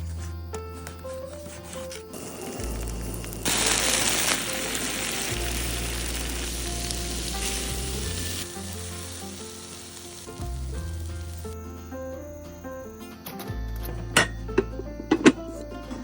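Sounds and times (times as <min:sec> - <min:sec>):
food sizzling in a pan: 0:02.0 - 0:11.6
background music with bass: 0:02.5 - 0:16.0.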